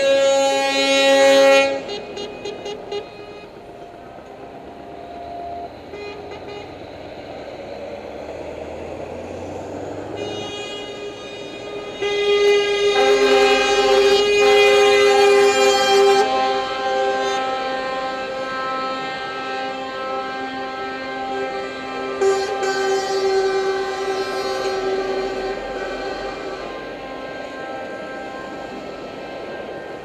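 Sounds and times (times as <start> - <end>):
truck air horns: 0.0 - 8.2, 8.9 - 30.0.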